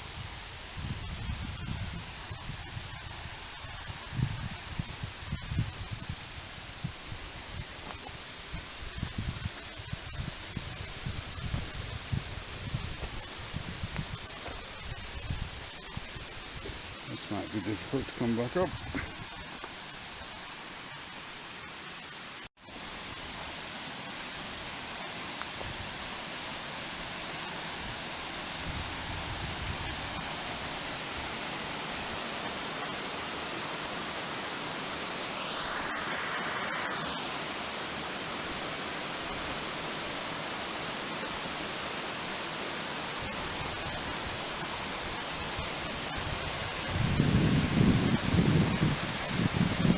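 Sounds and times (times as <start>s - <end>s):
waterfall rushing: 14.2s - 49.9s.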